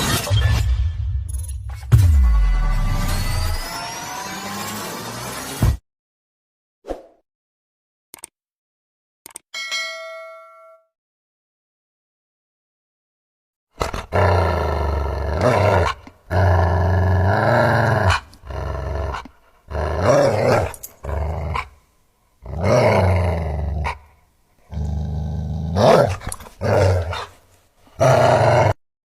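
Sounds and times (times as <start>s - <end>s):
dog growling and snarling: 13.8s - 21.8s, 22.4s - 28.8s.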